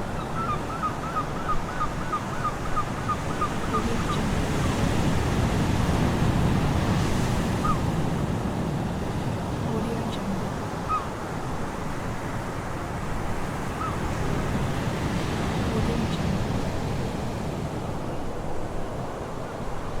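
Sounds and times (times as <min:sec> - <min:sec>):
ocean surf on beach: 0:00.0 - 0:20.0
seagull calling: 0:00.2 - 0:04.8, 0:09.8 - 0:11.2.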